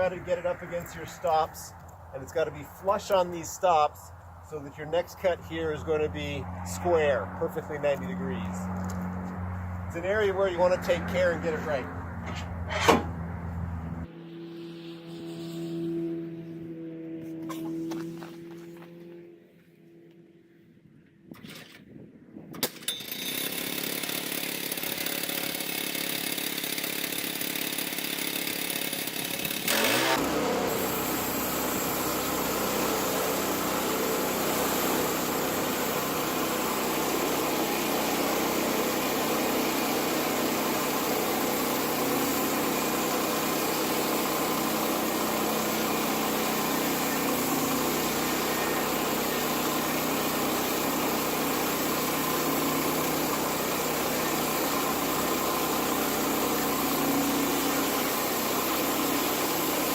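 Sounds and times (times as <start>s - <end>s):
gas engine revving: 27.2s - 59.9s.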